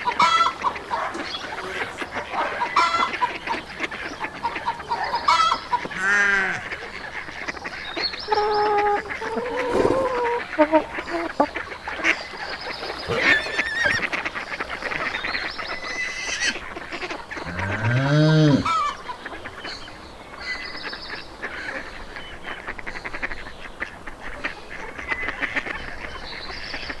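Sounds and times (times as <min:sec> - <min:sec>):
fowl honking and quacking: 0:00.0 - 0:19.8, 0:21.4 - 0:26.2
deep animal call: 0:08.2 - 0:11.5, 0:13.0 - 0:14.2, 0:17.4 - 0:19.0.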